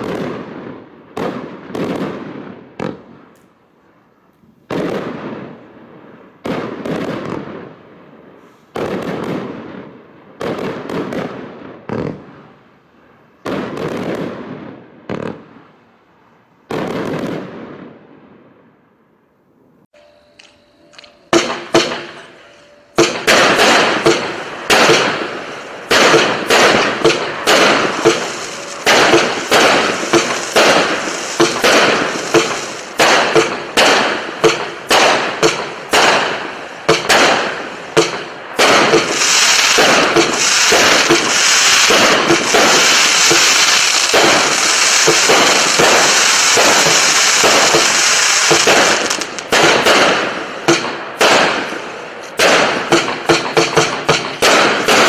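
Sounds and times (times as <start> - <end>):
firework cakes banging and crackling: 0.0 - 3.5, 20.4 - 55.0.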